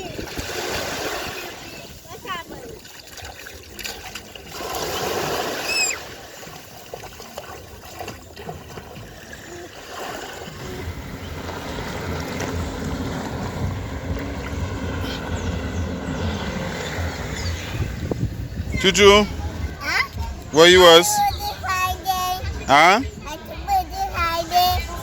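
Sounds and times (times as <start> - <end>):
sea water splashing on beach: 0.0 - 18.6.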